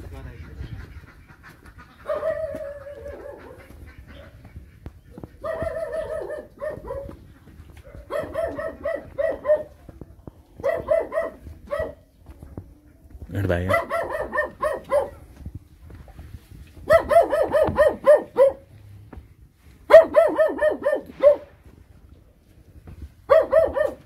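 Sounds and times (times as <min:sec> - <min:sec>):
dog barking: 0:02.0 - 0:04.4, 0:05.4 - 0:07.2, 0:07.8 - 0:09.8, 0:10.6 - 0:12.1, 0:13.6 - 0:15.3, 0:16.8 - 0:18.7, 0:19.9 - 0:21.5, 0:23.3 - 0:24.0.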